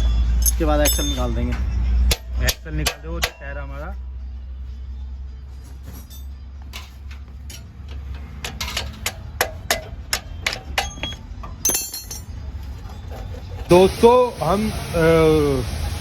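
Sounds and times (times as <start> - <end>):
ringing metallic clink: 0.0 - 3.6, 5.9 - 13.7
sharp metal taps: 0.0 - 3.6, 6.1 - 12.4.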